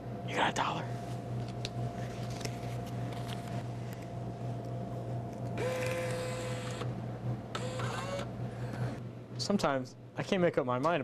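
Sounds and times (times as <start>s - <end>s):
electrical hum: 0.0s - 11.0s
small motor whirring: 5.6s - 6.9s, 7.6s - 9.0s.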